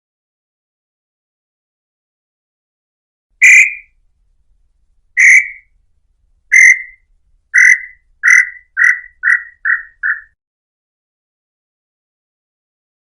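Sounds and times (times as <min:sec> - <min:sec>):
bird whistling descending notes: 0:03.4 - 0:03.9, 0:05.2 - 0:05.6, 0:06.5 - 0:07.0, 0:07.6 - 0:10.3.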